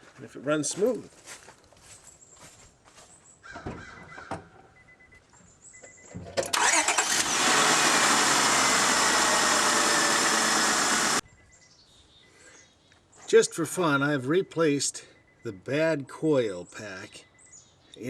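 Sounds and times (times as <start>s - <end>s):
starter cranking engine: 6.4s - 11.2s
car engine running: 6.6s - 11.2s.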